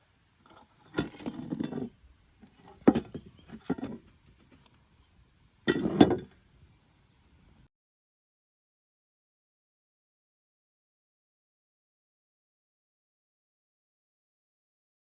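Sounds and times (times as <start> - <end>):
hard objects clinking: 2.5 - 4.0.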